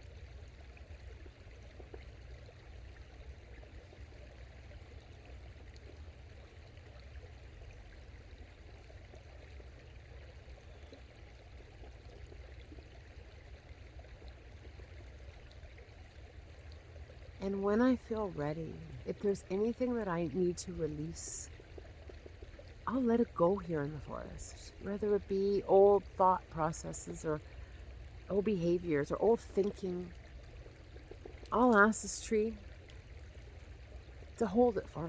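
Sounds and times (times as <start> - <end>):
creek water rushing: 14.6 - 35.0.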